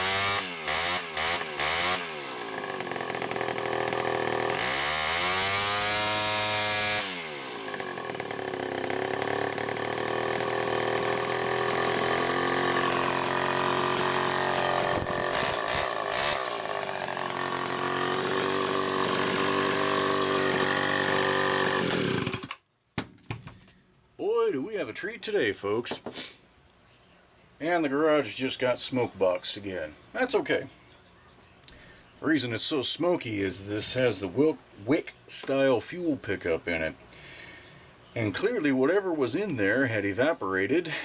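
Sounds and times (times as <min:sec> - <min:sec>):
chainsaw engine revving: 0:00.0 - 0:22.6.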